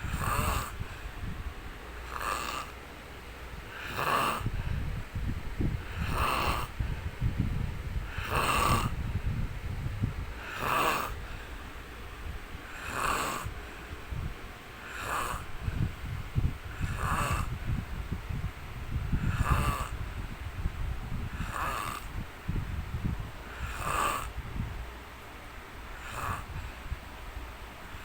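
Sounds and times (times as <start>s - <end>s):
man snoring: 0.0s - 1.0s, 2.0s - 2.8s, 3.7s - 4.7s, 5.6s - 6.9s, 8.0s - 9.1s, 10.4s - 11.4s, 12.7s - 13.6s, 14.8s - 15.8s, 16.7s - 17.6s, 19.1s - 20.0s, 21.2s - 22.2s, 23.5s - 24.4s, 25.9s - 26.6s.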